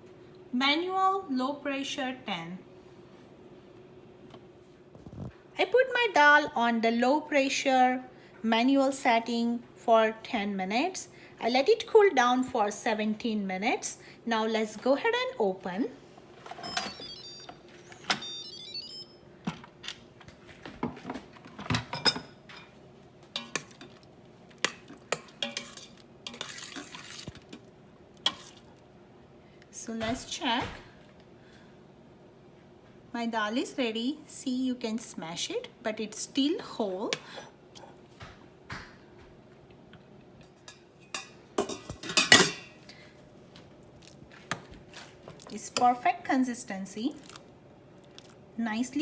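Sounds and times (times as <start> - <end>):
spoon scraping a steel pot: 25.1 - 27.4.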